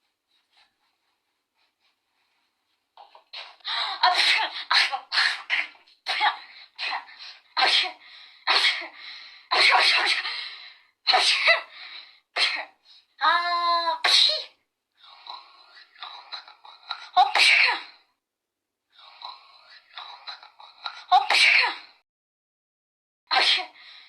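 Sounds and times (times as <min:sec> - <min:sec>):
person sneezing: 0:20.9 - 0:21.9.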